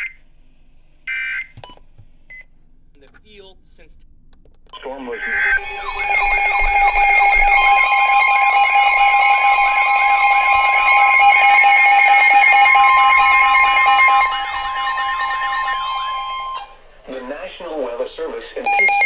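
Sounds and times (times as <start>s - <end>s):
weather radio warning tone: 4.8s - 16.8s, 18.7s - 19.0s
steady alarm tone: 5.1s - 17.0s, 18.7s - 19.0s
wavering tone: 5.1s - 17.1s, 18.7s - 19.0s.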